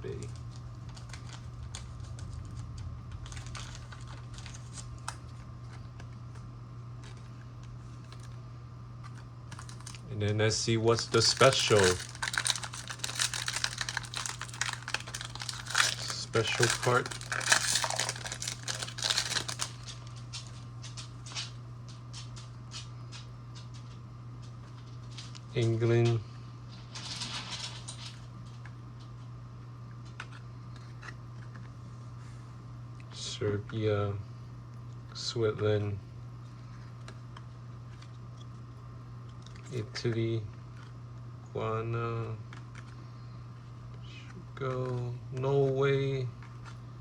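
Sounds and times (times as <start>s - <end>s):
steady low hum: 0.0s - 47.0s
cards clicking and rustling: 9.0s - 10.1s, 10.9s - 20.5s.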